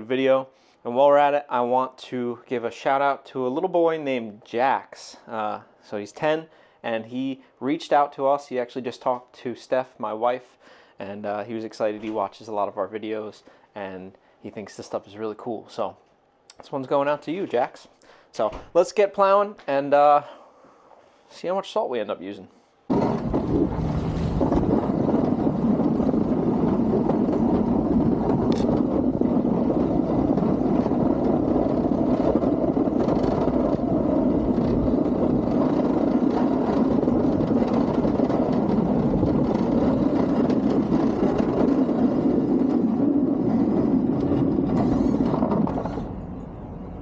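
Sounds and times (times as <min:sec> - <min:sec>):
vehicle engine rumbling: 0:22.9 - 0:47.0.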